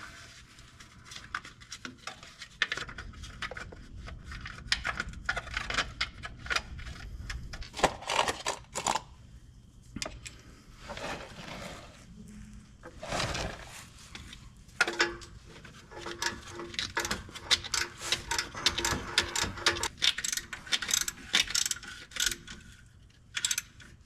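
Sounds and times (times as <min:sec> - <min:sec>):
hand tools clicking on metal: 0:14.8 - 0:22.6.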